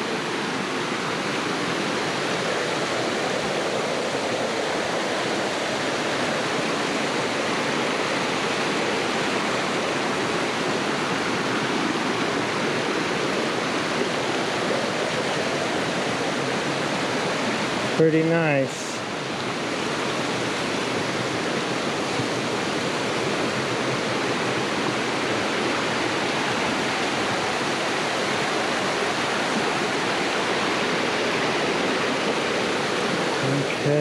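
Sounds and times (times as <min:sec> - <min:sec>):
waterfall rushing: 0:00.0 - 0:34.0.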